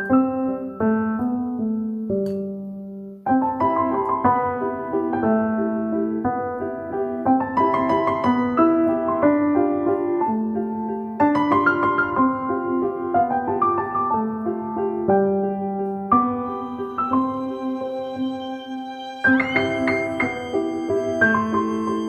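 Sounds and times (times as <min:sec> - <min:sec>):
gentle piano music: 0:00.0 - 0:22.0.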